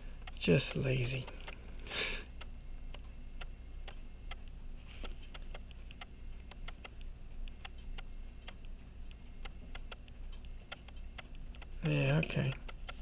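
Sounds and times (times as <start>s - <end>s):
pocket watch ticking: 3.4s - 13.0s.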